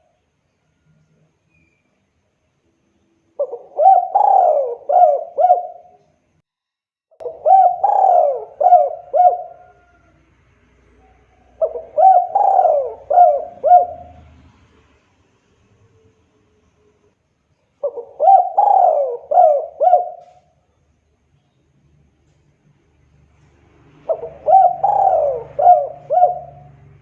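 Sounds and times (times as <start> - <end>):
dove cooing: 3.4 - 6.0, 7.2 - 10.2, 10.9 - 14.4, 17.8 - 20.5, 24.0 - 27.0.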